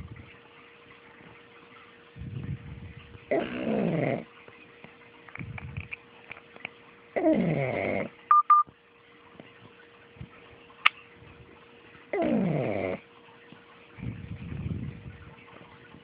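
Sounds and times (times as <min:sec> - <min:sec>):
dog snoring: 0:02.2 - 0:04.3, 0:07.2 - 0:08.2, 0:12.1 - 0:13.1
short beeps: 0:08.3 - 0:08.6.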